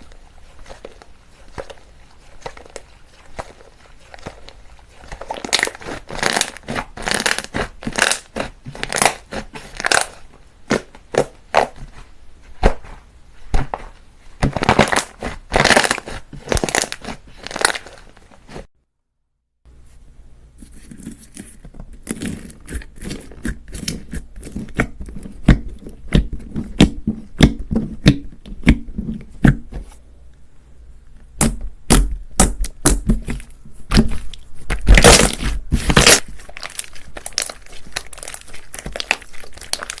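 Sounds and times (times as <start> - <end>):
hands squishing slime: 0.0 - 18.7, 31.4 - 40.0.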